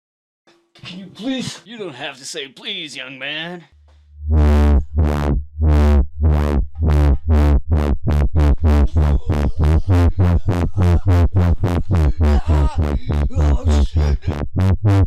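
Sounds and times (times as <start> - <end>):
sustained deep bass: 3.8 - 15.0
filtered synth stabs: 4.3 - 15.0.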